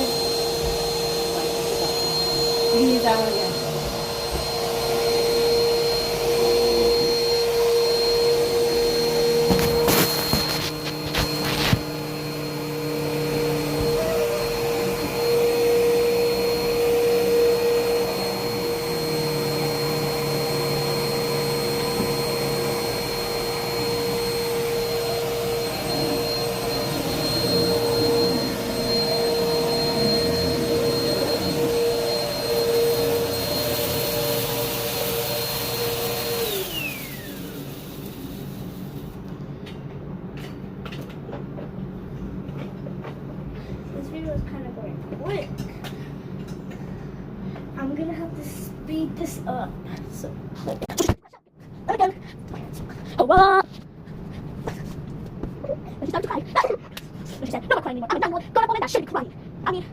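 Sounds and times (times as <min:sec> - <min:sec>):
vacuum cleaner running: 0:00.0 - 0:39.4.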